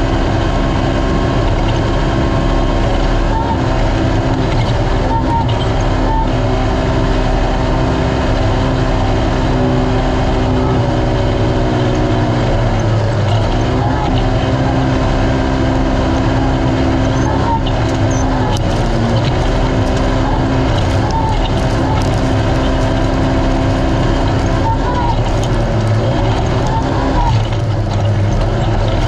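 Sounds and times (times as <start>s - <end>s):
engine running at high revs: 0.0s - 29.0s
steady rushing noise: 17.8s - 29.0s.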